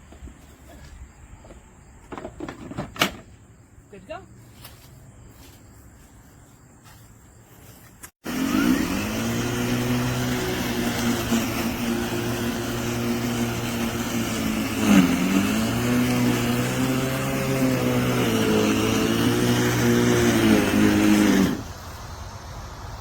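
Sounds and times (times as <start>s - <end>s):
electric lawn mower motor humming: 8.2s - 21.8s.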